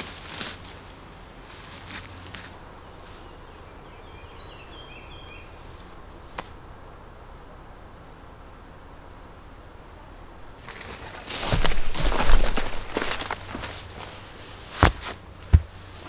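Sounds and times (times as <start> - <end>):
faint bird chirps: 1.2 - 10.8.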